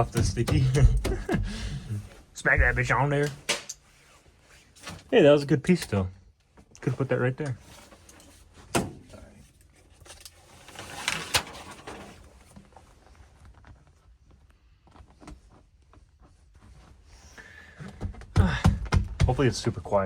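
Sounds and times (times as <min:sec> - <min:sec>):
mat rustling: 0:00.0 - 0:05.1, 0:10.5 - 0:17.3.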